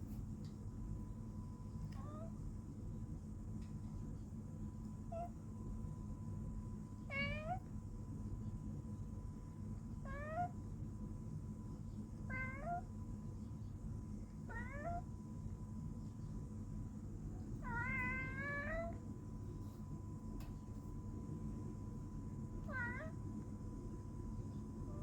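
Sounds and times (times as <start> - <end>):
cat meowing: 7.1 - 7.7, 10.0 - 10.6, 12.3 - 12.9, 14.5 - 15.1, 17.6 - 19.0, 22.6 - 23.2.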